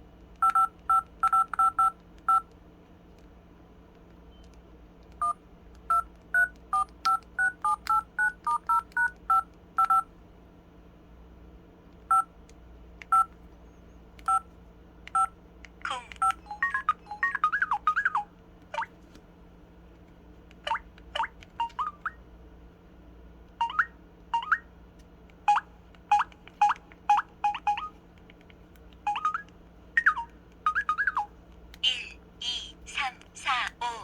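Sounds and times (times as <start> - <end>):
phone keypad dial beeps: 0.4 - 2.5, 5.2 - 10.1, 12.1 - 12.3, 13.0 - 13.3, 14.2 - 14.5, 15.1 - 15.3, 16.1 - 18.2, 25.5 - 28.0, 29.0 - 31.3.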